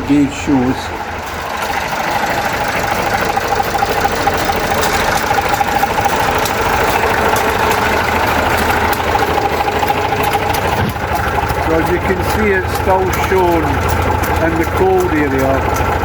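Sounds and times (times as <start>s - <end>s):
tractor engine idling: 0.0s - 16.0s.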